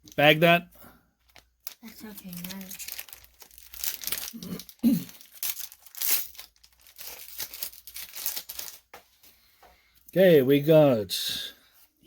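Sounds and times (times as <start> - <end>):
foil wrapper tearing and crinkling: 1.2 - 8.9.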